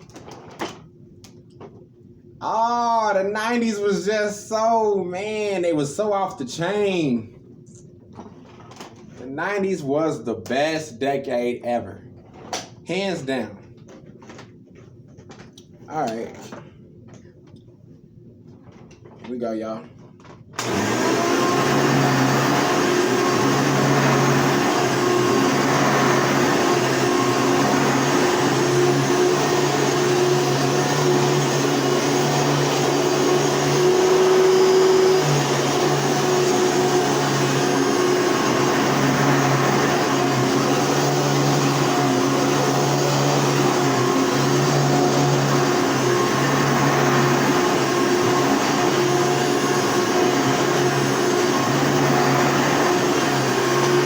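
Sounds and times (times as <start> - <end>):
vacuum cleaner running: 2.4 - 7.2, 20.6 - 54.0.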